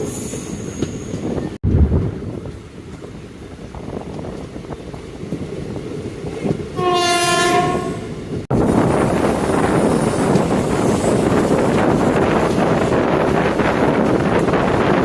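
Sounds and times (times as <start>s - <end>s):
rush of wind: 0.0s - 15.0s
train rail noise: 0.0s - 15.0s
locomotive horn blast: 6.8s - 8.2s.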